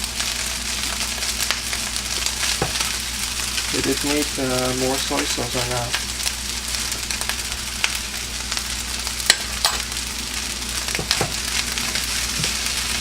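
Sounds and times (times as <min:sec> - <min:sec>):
rice sizzling in a hot pan: 0:00.0 - 0:13.0.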